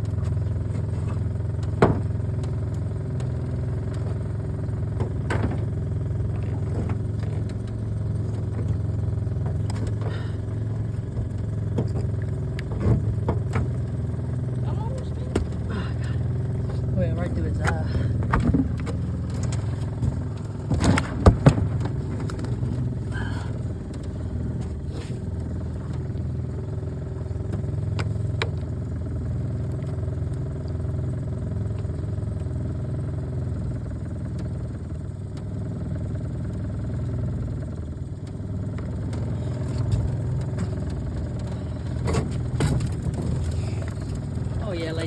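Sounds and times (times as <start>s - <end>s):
outboard motor running: 0.0s - 45.0s
sharp knocks and clatter: 0.1s - 28.8s.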